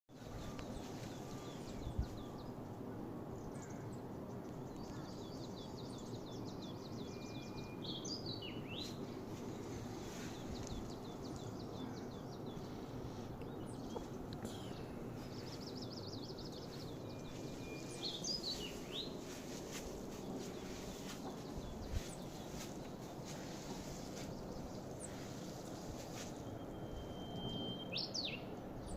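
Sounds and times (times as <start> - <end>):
low background rumble: 8.3 - 27.3
bird chirps: 13.4 - 28.9
songbird trilling: 26.4 - 28.4.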